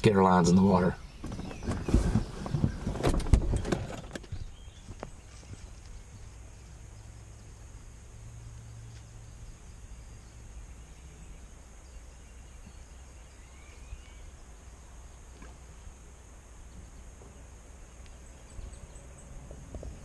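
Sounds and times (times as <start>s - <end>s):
rising bird chirp: 0.1s - 4.7s.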